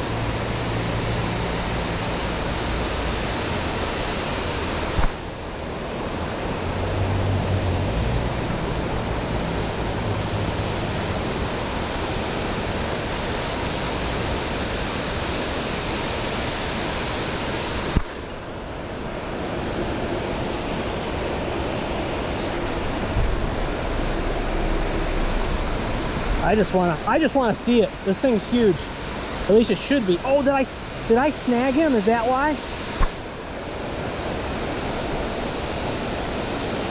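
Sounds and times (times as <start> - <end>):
fast creek current: 0.0 - 36.9
waterfall roaring: 0.0 - 36.9
sharp knock: 33.0 - 33.2.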